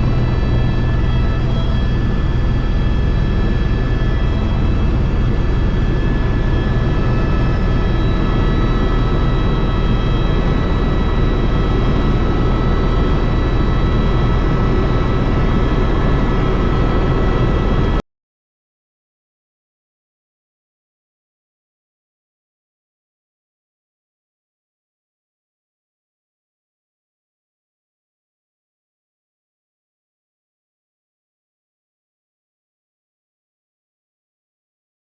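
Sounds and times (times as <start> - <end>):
helicopter engine and rotor drone: 0.0 - 18.0
high turbine whine: 0.0 - 18.0.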